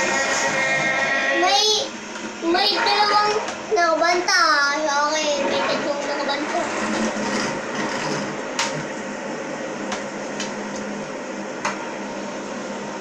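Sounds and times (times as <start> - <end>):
fidget spinners whirring: 0.0 - 9.0.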